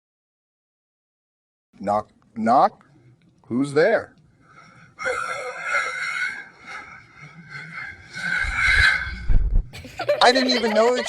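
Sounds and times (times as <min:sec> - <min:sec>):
voice making raspy noises: 0:05.0 - 0:09.2
low rumble: 0:07.8 - 0:09.8.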